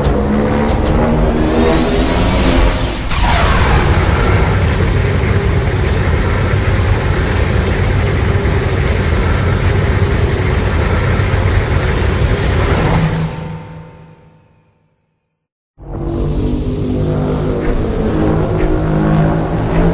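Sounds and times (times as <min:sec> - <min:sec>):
monster roar with deep rumble: 0:00.9 - 0:07.2.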